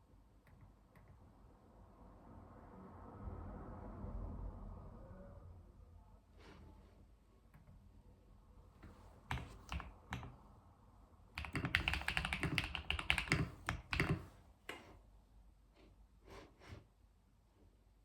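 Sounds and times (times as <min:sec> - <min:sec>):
typing on computer keyboard: 0:08.8 - 0:10.4, 0:11.4 - 0:14.8.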